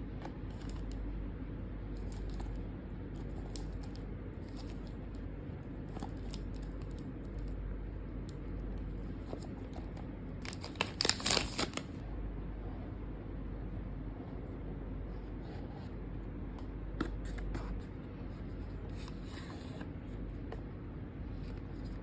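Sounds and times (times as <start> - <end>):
low room hum: 0.0 - 22.0
packaging rustling and clicking: 3.2 - 5.0, 9.2 - 12.0.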